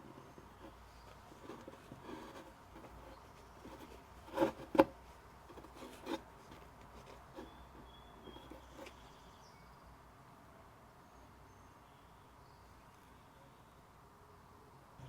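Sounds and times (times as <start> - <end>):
light rustling: 0.0 - 9.0.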